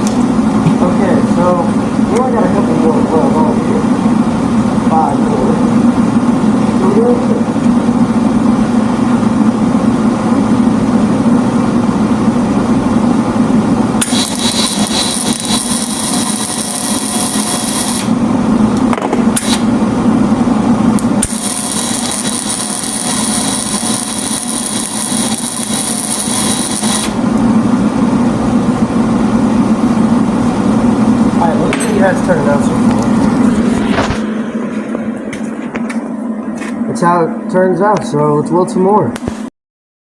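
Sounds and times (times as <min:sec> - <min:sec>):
low hum: 0:00.0 - 0:38.5
welding arc crackling: 0:13.9 - 0:19.8, 0:20.9 - 0:27.6.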